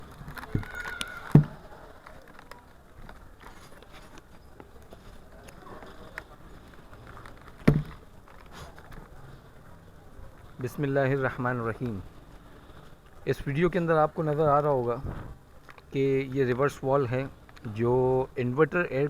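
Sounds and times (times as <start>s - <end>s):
low steady background noise: 0.0s - 19.0s.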